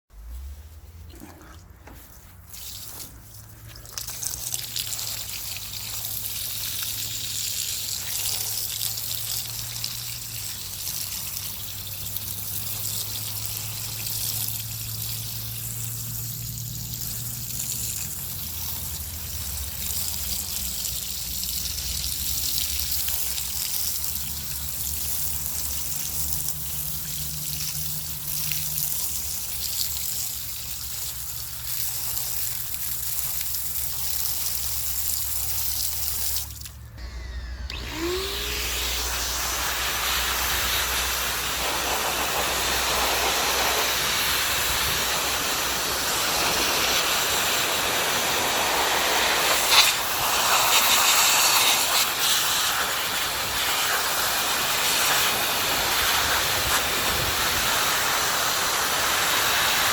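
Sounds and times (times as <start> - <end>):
water trickling: 2.4 - 36.8.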